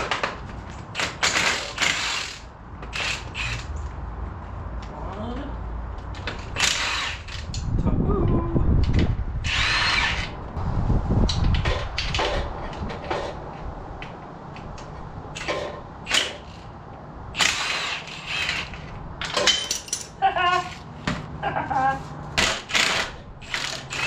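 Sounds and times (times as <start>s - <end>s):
power tool spinning bolts: 1.0s - 3.8s, 6.2s - 7.7s, 9.4s - 10.4s, 15.4s - 16.7s, 17.4s - 20.9s, 22.4s - 24.0s
metal clicks and clinks: 18.6s - 20.2s.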